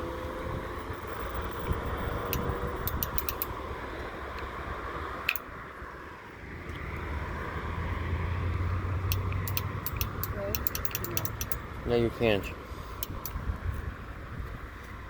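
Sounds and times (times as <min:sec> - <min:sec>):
cars passing: 0:00.0 - 0:15.0
short sharp clicks: 0:13.0 - 0:13.4.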